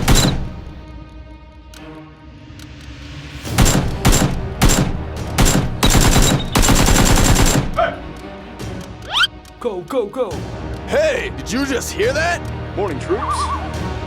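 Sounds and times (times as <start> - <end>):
automatic gunfire burst: 0.0 - 0.5, 3.6 - 7.8
single gunshots: 0.0 - 0.6, 3.6 - 7.8.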